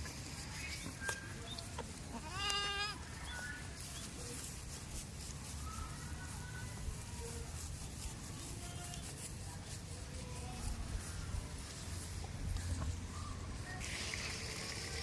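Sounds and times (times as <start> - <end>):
goat bleating: 2.0 - 3.0.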